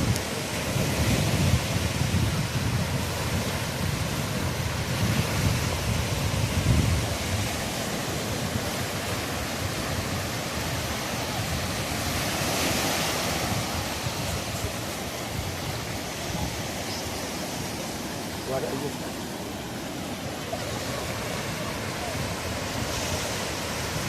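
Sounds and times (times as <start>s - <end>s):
sea waves washing on shore: 0.0s - 24.0s
wind rumbling on microphone: 0.0s - 24.0s.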